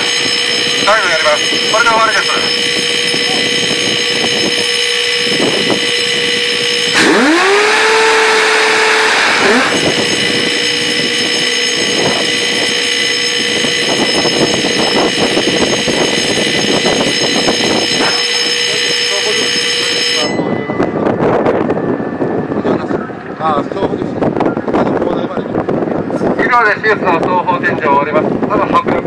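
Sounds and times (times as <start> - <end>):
rotary cannon spinning whine: 0.0 - 20.4
steady hum: 2.6 - 19.1.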